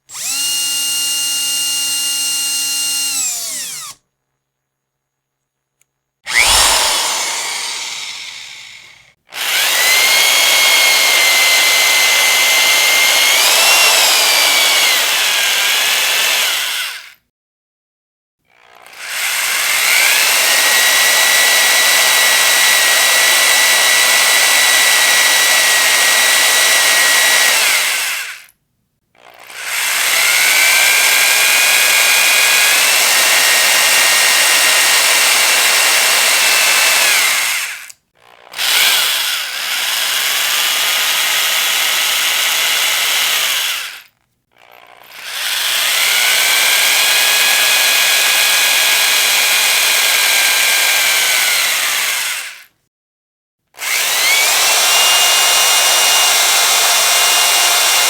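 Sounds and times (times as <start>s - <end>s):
electric power drill whine: 0.0s - 4.0s, 6.3s - 17.2s, 18.6s - 28.5s, 29.2s - 52.7s, 53.8s - 58.0s.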